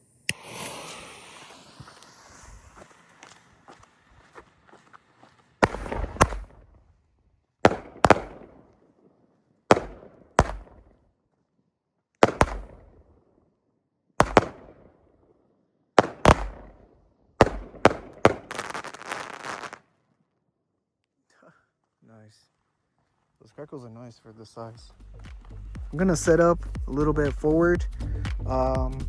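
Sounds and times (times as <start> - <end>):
firework bangs: 0.0 - 4.5, 5.6 - 6.9, 7.6 - 8.8, 9.7 - 11.0, 12.2 - 13.1, 14.2 - 15.0, 16.0 - 19.9
firework crackling: 0.0 - 6.8, 7.6 - 8.6, 9.7 - 10.9, 12.2 - 13.0, 14.2 - 14.7, 16.0 - 16.8, 17.4 - 19.9.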